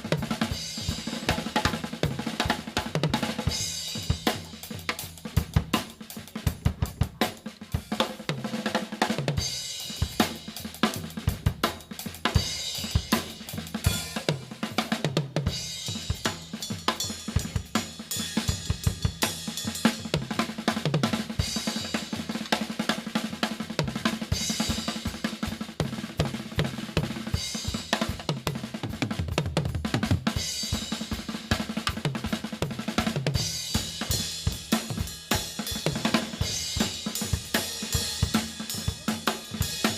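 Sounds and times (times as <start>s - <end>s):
fast drum kit playing: 0.0s - 39.9s.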